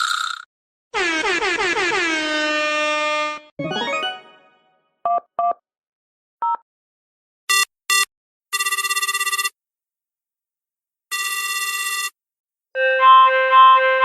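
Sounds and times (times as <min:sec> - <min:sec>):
telephone keypad beeps: 0:07.5 - 0:09.6
telephone ringing: 0:07.5 - 0:09.6, 0:11.1 - 0:12.2.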